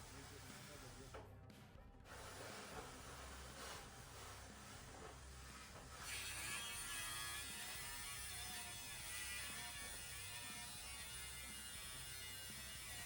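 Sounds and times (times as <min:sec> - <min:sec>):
background music: 0:06.2 - 0:13.0.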